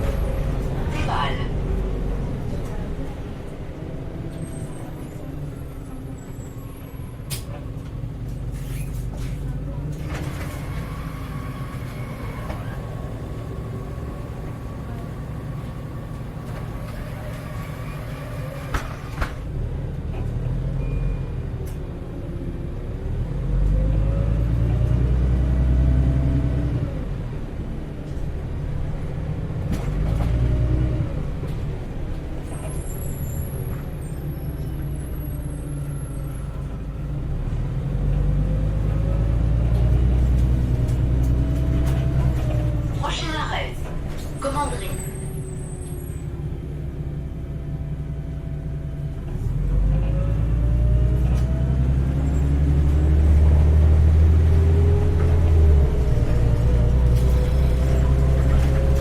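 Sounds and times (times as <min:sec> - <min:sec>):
bus engine rumbling: 0:00.0 - 0:59.0.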